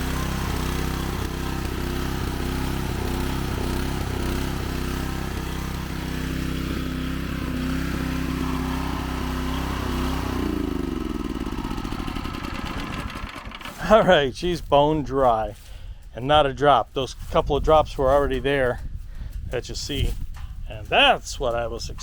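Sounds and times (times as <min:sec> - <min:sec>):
pressure washer running: 0:00.0 - 0:14.1.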